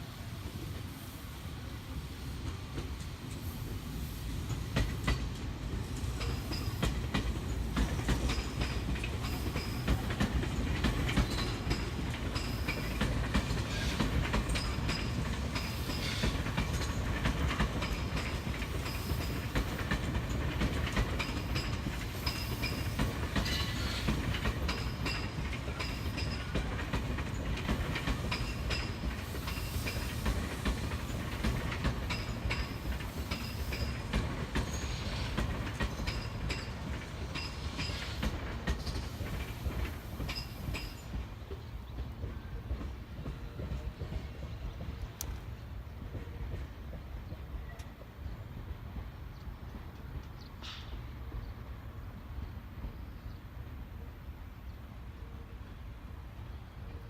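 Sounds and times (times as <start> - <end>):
train rumbling past: 0.0 - 57.0
wheels clicking over rail joints: 4.5 - 48.1.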